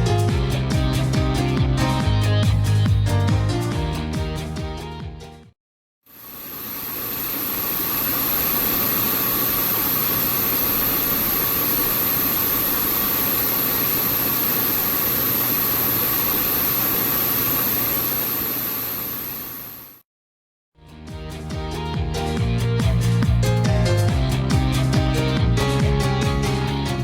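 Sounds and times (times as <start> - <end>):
hard disk drive whirring: 6.1 - 20.0.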